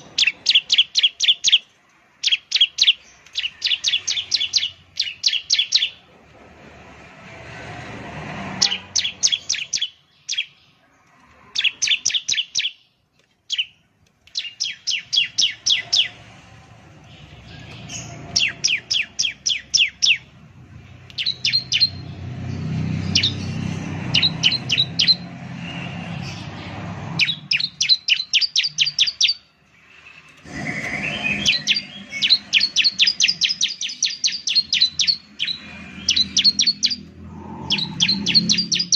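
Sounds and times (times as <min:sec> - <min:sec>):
bird singing sharp high notes: 0:08.6 - 0:10.6, 0:27.2 - 0:38.9.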